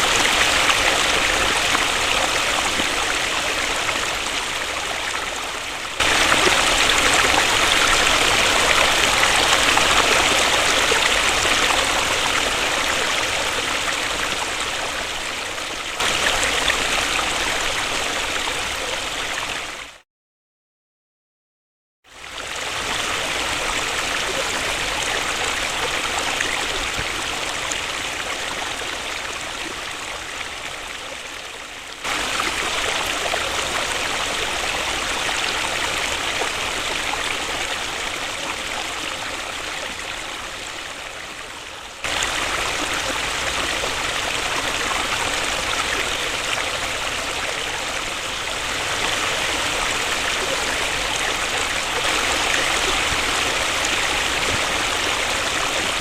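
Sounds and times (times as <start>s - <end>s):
waterfall rushing: 0.0s - 19.7s, 32.0s - 41.0s, 42.0s - 56.0s.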